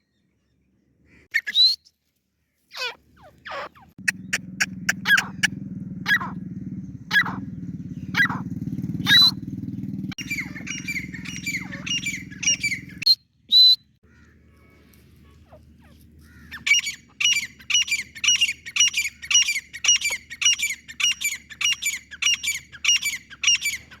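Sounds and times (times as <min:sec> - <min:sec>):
francolin calling: 0:02.8 - 0:06.4, 0:07.0 - 0:09.4, 0:10.2 - 0:13.8, 0:16.3 - 0:24.0.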